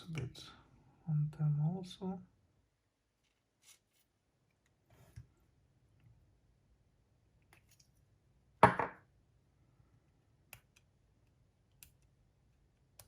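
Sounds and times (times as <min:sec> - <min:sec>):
sharp knock on workbench: 0:08.6 - 0:09.0.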